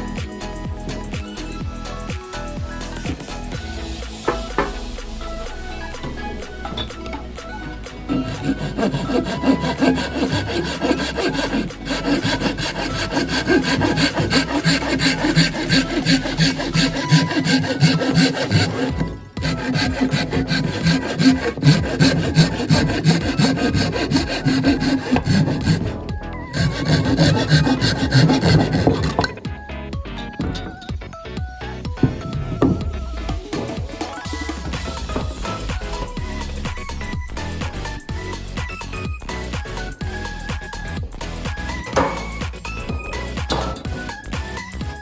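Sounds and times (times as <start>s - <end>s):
saw cutting through bamboo: 5.4s - 29.5s, 34.7s - 38.2s, 39.5s - 45.0s.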